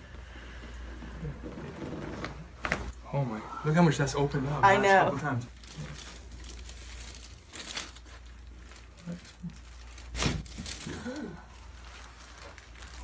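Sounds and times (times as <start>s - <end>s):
rustling and handling noises: 4.9s - 13.0s.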